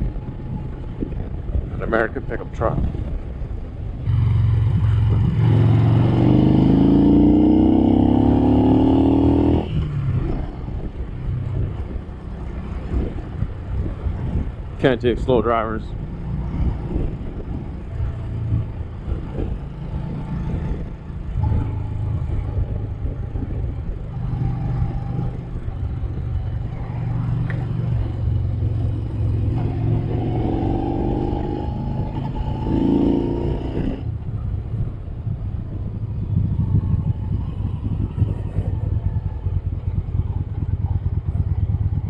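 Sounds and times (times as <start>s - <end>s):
motorcycle engine and wind rumble: 0.0s - 42.0s
motorcycle whine accelerating: 0.0s - 42.0s.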